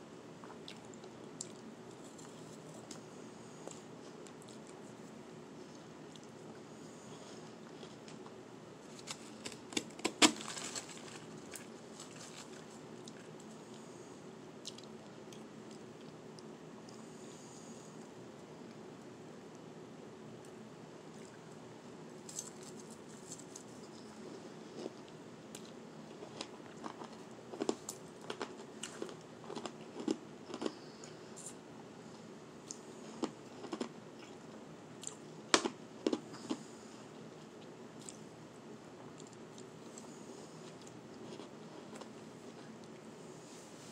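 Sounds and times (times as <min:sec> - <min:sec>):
shaved ice being chewed: 0:07.6 - 0:13.9, 0:22.3 - 0:31.5, 0:32.7 - 0:34.4.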